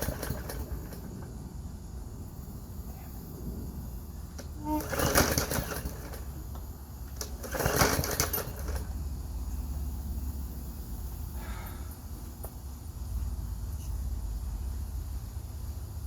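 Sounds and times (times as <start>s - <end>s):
lawn mower engine running: 0.0s - 1.3s, 4.3s - 11.6s.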